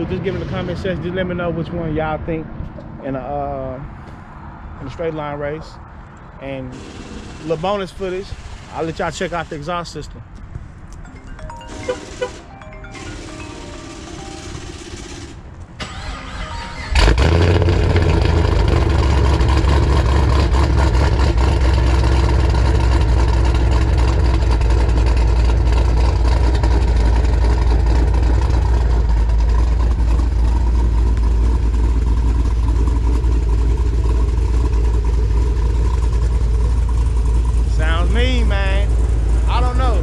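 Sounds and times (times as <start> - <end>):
car engine starting and idling: 6.5 - 9.9, 11.5 - 40.0.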